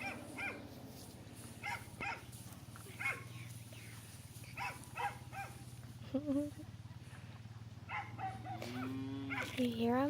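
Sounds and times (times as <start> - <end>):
dog barking: 0.0 - 0.6, 1.6 - 2.3, 3.0 - 3.3, 4.6 - 5.6, 7.9 - 9.6
steady low hum: 0.0 - 10.0.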